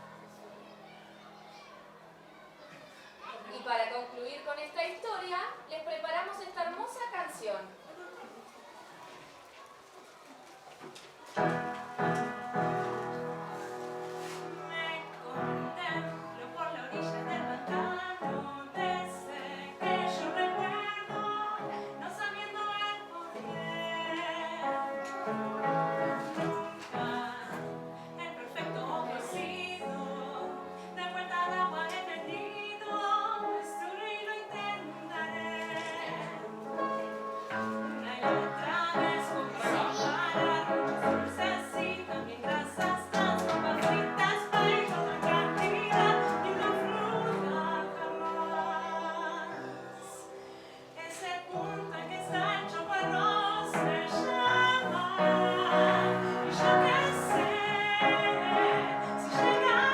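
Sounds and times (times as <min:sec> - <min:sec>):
instrumental accompaniment: 0:11.4 - 0:16.4
person singing: 0:38.1 - 0:50.4.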